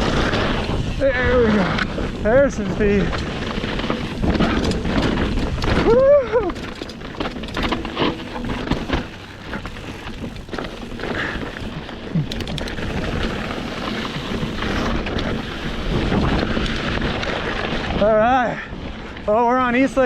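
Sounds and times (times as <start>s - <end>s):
bike knocks and rattles: 0.0s - 18.4s
wind on microphone: 0.0s - 19.3s
bike tyres on rocky trail: 0.0s - 20.0s.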